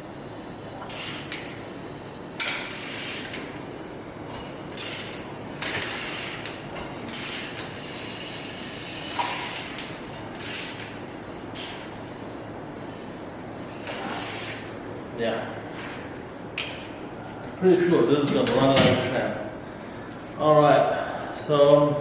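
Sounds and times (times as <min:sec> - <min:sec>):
mechanical rubbing and rasping: 0:04.4 - 0:14.7.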